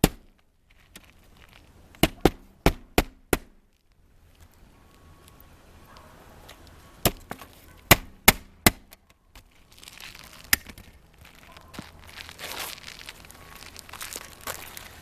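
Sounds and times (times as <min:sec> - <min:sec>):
shingles rustling: 0:00.0 - 0:15.0.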